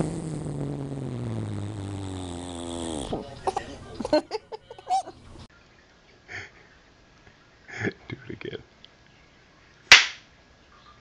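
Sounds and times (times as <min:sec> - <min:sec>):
low buzzing fart: 0:00.0 - 0:03.7.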